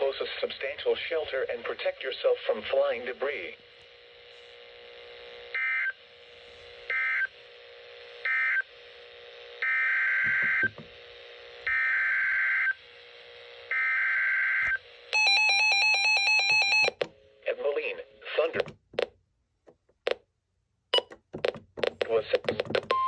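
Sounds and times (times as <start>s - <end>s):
electronic alert beeps: 21.0s - 21.2s.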